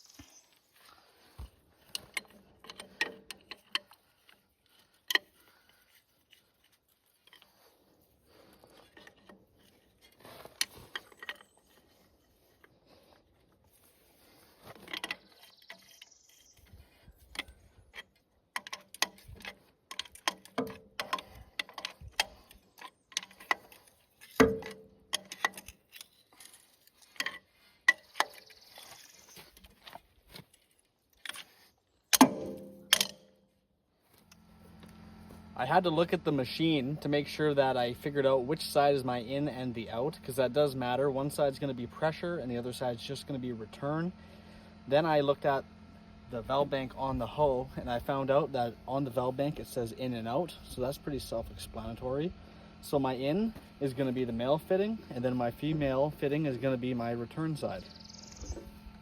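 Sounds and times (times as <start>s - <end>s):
metallic clicks of hand tools: 17.3s - 29.0s, 32.1s - 33.3s.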